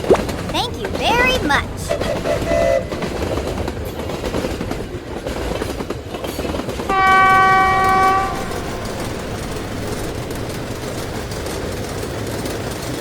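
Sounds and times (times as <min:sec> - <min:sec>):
train horn blast: 0:01.9 - 0:03.2, 0:06.9 - 0:09.2
electric train running: 0:01.9 - 0:12.6.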